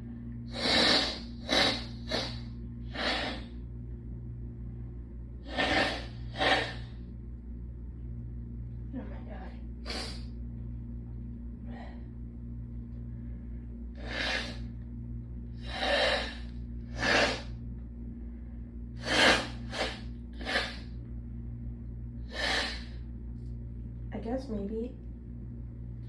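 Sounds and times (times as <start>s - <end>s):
woman blowing her nose: 0.5s - 3.5s, 5.5s - 6.8s, 9.9s - 10.2s, 14.0s - 14.6s, 15.6s - 16.4s, 17.0s - 17.5s, 19.0s - 20.9s, 22.3s - 22.9s
quick breaths: 14.0s - 14.7s, 15.6s - 17.5s, 22.3s - 23.0s.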